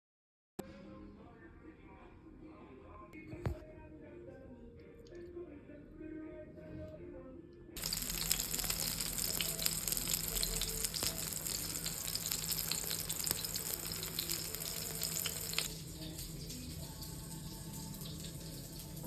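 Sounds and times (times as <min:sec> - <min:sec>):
food sizzling in hot oil: 0:07.8 - 0:19.0.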